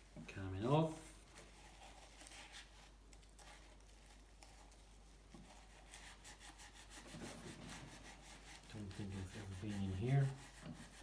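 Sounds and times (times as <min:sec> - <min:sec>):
faint scrubbing of metal: 0:05.4 - 0:11.0.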